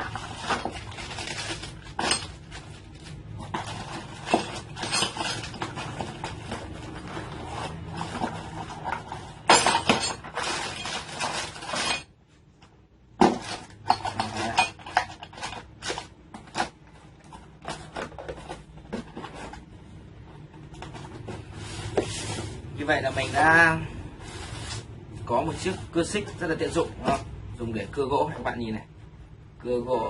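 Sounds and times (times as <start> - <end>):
metal parts clinking: 1.1 - 2.7, 3.6 - 6.3, 9.5 - 12.1, 13.4 - 15.6.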